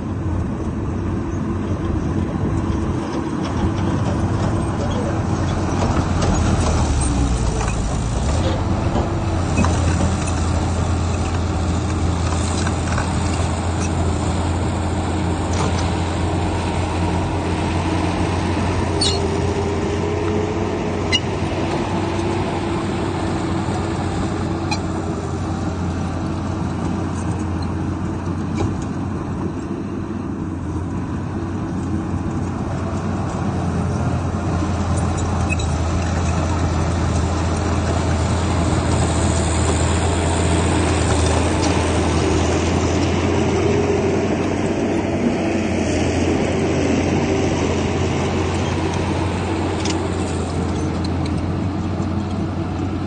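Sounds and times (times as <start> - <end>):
bulldozer diesel engine running: 0.0 - 53.0.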